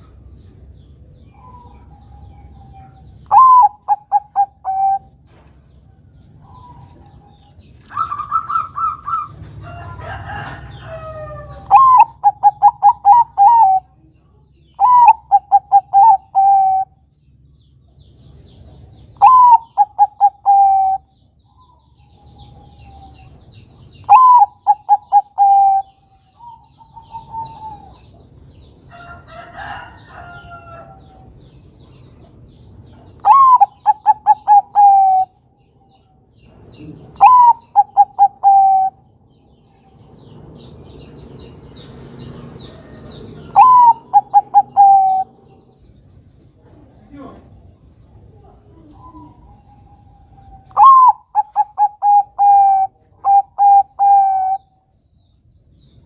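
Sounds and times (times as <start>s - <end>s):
small birds chirping: 0.0s - 56.0s
dove cooing: 1.3s - 5.2s, 7.9s - 9.5s, 11.0s - 14.0s, 14.8s - 17.0s, 19.2s - 21.1s, 24.0s - 28.2s, 33.2s - 35.4s, 36.8s - 39.1s, 42.9s - 45.5s, 48.4s - 54.8s
different bird call: 3.2s - 5.2s, 7.8s - 13.9s, 14.7s - 17.0s, 19.2s - 23.2s, 23.9s - 28.0s, 33.2s - 35.4s, 37.1s - 39.0s, 42.7s - 45.6s, 48.8s - 54.8s.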